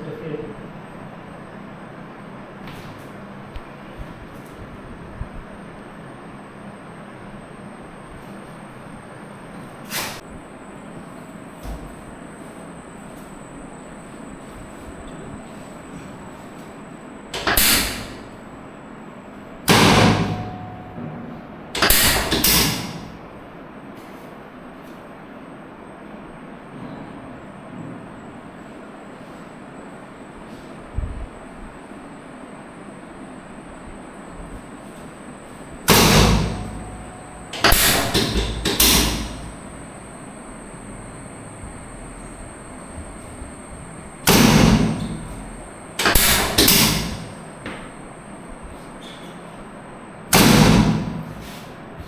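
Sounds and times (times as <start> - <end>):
loud ringing thump: 19.7 - 22.9.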